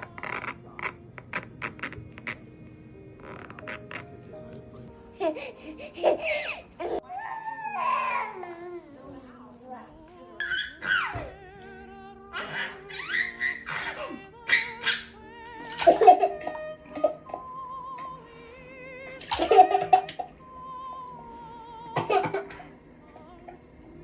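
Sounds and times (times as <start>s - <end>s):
baby laughing and giggling: 5.1s - 7.0s, 15.7s - 17.4s, 19.2s - 20.4s.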